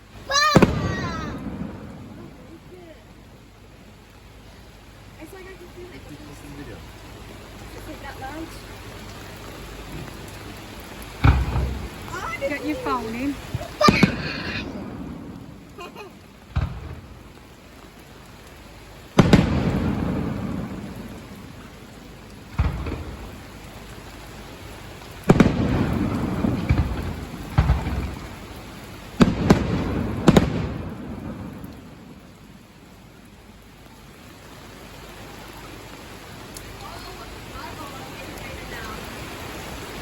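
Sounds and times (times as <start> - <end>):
heavy rain: 0.0 - 40.0
fireworks bangs with rumble: 0.4 - 2.4, 11.2 - 15.8, 16.4 - 17.4, 19.2 - 21.6, 22.4 - 23.5, 25.2 - 32.3.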